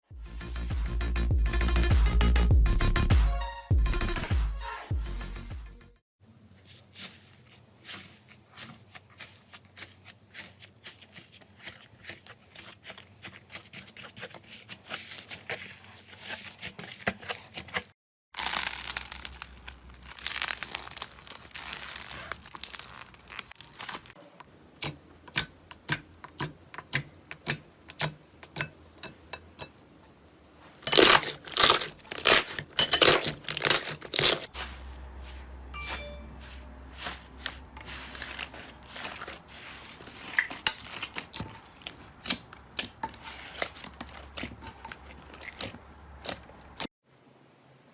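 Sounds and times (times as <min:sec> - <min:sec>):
slime clicks and crackles: 0:18.4 - 0:24.2.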